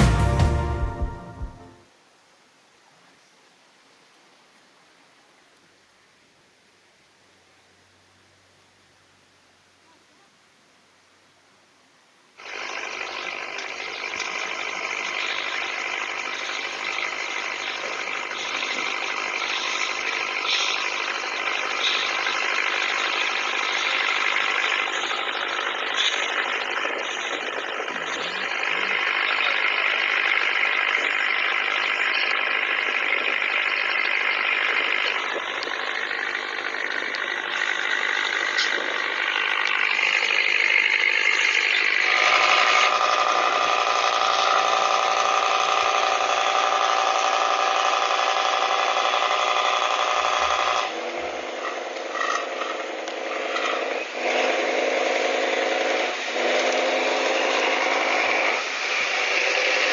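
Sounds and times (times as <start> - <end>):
toy steam boats putt-putting: 12.4 - 41.5.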